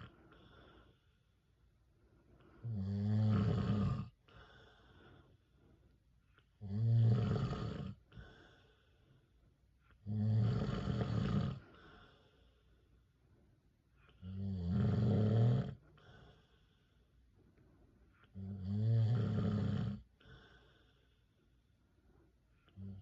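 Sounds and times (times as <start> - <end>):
faint breaths: 0.0 - 14.5, 15.6 - 23.0
man snoring: 2.6 - 4.2, 6.6 - 8.0, 10.0 - 11.7, 14.2 - 15.8, 18.4 - 20.6.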